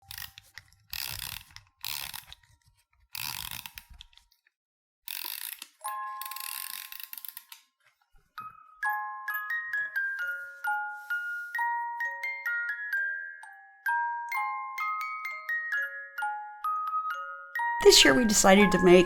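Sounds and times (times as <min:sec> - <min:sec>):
ratcheting mechanism clicking: 0:00.0 - 0:02.5, 0:03.1 - 0:04.2, 0:05.1 - 0:07.6.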